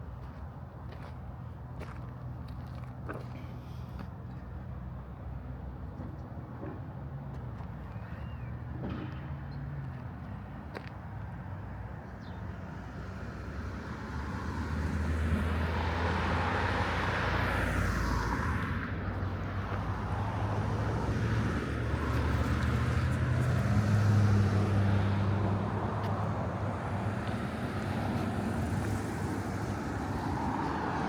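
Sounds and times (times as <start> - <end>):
traffic driving past: 6.7 - 31.0.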